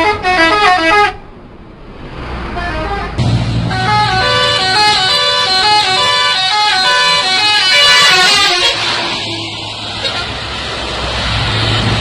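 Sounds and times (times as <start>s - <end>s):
multi-tone musical bus horn: 0.0s - 1.2s, 2.5s - 10.4s
low rumble: 3.2s - 5.5s.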